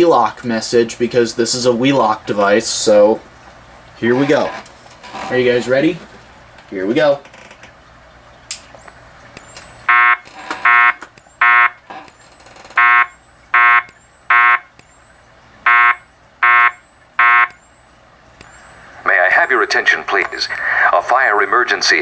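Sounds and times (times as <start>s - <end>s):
faint high whine with ticks: 0.0s - 22.0s
short pitched beeps: 8.8s - 21.8s.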